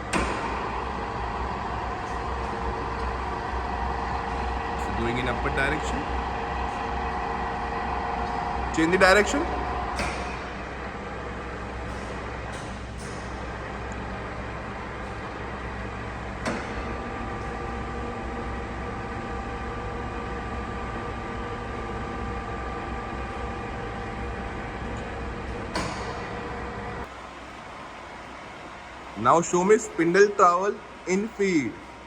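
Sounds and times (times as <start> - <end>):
drill machine hum: 0.0 - 12.5
motor whine: 0.0 - 32.0.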